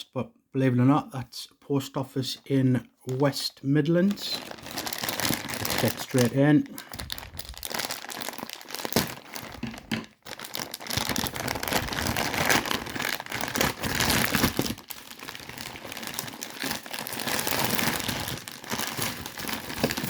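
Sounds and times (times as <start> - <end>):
coin bag crinkling: 4.1 - 20.0.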